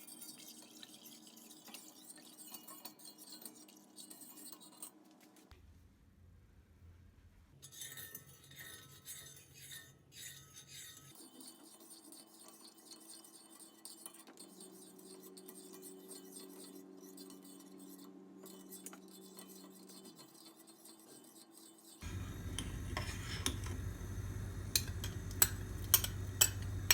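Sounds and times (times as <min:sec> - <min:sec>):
faint steady hum: 0:22.0 - 0:26.9.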